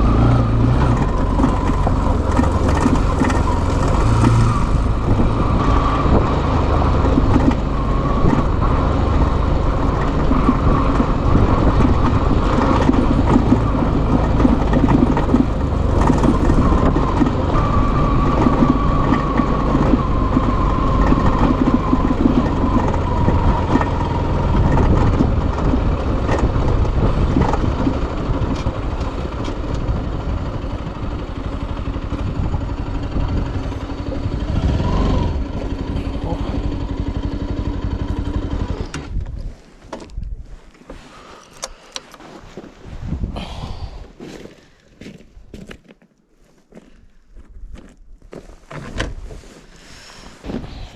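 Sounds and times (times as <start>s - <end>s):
motorcycle engine running: 0.0s - 39.6s
wind rushing: 42.9s - 44.0s.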